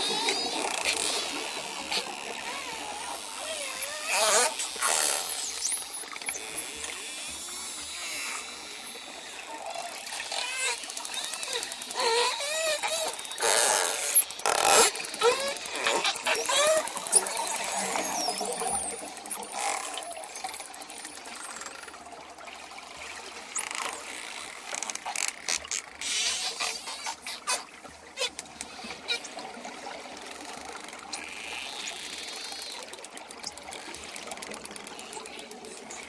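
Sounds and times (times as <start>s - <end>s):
dolphin echolocation clicks: 0.2s - 21.9s, 30.5s - 36.0s
watery hiss: 26.0s - 27.8s.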